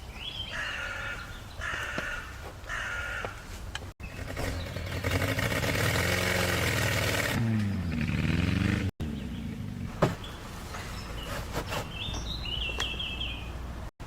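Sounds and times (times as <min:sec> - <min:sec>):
birds chirping: 0:00.0 - 0:13.9
car engine revving: 0:04.1 - 0:10.4.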